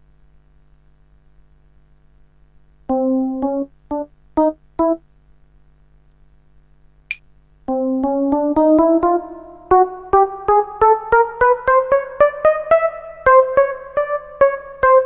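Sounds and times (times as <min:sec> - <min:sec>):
electrical hum: 0:00.0 - 0:15.0
piano notes stepping upward: 0:02.9 - 0:05.0, 0:07.7 - 0:15.0.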